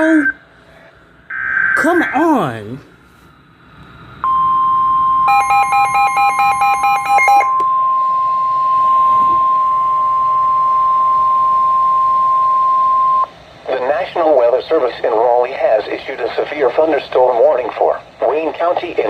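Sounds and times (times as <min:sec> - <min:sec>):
steady high alarm tone: 0:01.3 - 0:02.7, 0:04.2 - 0:13.3.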